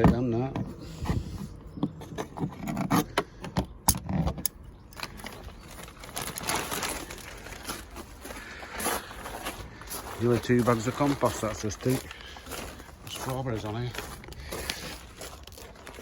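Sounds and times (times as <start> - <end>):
plastic sack rustling: 5.0 - 16.0.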